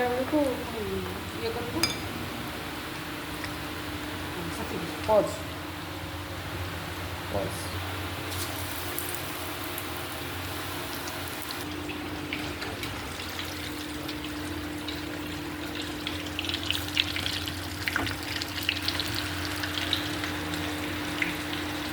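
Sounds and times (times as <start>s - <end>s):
constant low hum: 0.0s - 21.9s
food deep-frying in sizzling oil: 7.8s - 21.9s.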